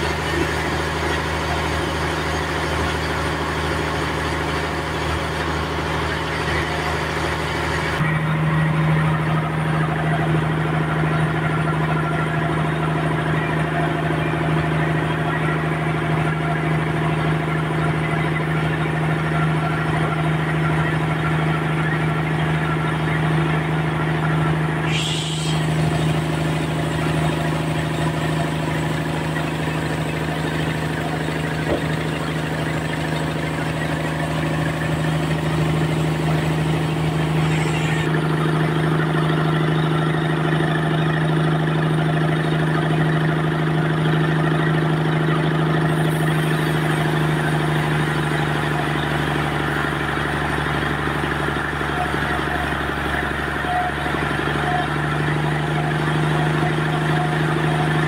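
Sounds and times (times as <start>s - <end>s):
sawmill machinery droning: 0.0s - 58.0s
brief high-pitched sound: 24.9s - 25.8s.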